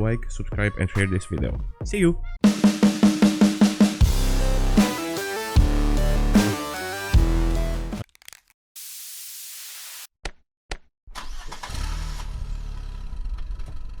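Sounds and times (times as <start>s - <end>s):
drum-heavy music: 2.4s - 8.0s
steady hiss: 8.8s - 10.1s.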